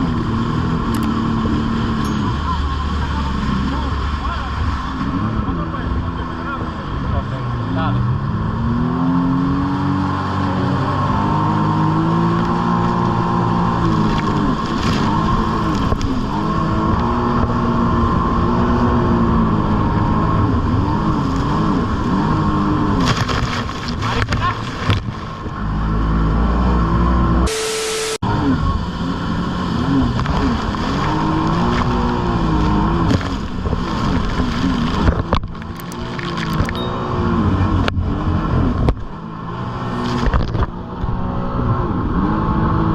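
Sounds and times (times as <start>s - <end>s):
jet ski engine revving: 0.0s - 42.9s.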